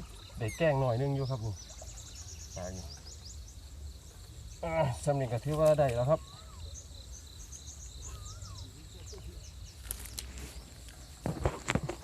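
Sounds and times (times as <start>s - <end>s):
insects chirping: 0.0s - 12.0s
bird call: 6.0s - 10.1s
sharp knocks and rustles: 9.8s - 12.0s.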